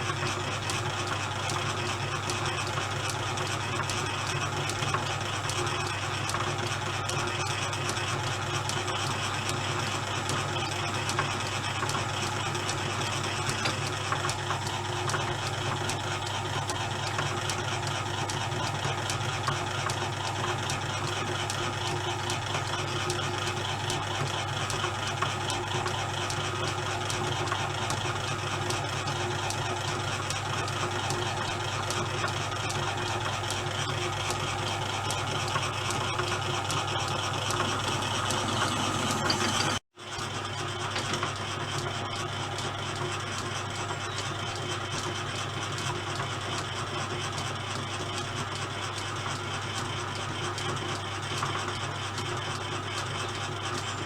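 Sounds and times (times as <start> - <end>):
lathe running with low hum: 0.0 - 54.0.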